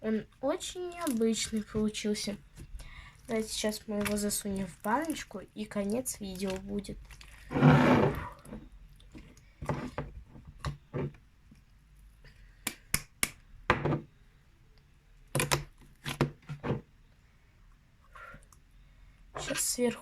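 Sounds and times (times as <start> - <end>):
slime squelching: 0.0 - 10.0.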